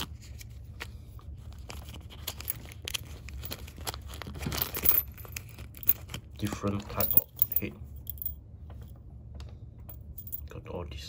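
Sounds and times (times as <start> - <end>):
steady low hum: 0.0 - 11.0
plastic bag rustling: 2.0 - 6.2.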